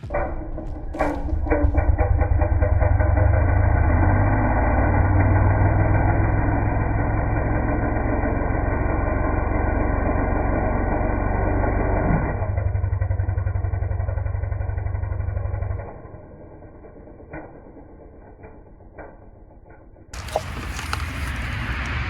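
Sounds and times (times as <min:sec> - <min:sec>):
chainsaw engine at high revs: 0:03.3 - 0:12.0.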